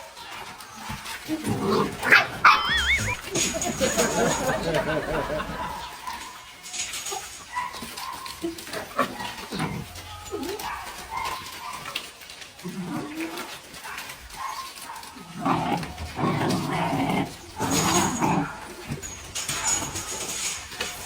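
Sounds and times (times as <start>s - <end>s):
dog drawn-out vocal calls: 0.0s - 3.2s, 7.5s - 20.1s.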